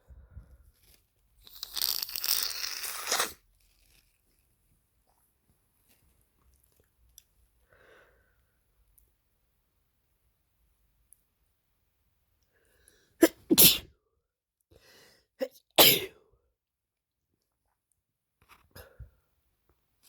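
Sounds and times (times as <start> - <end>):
person blowing nose: 1.4 - 3.4.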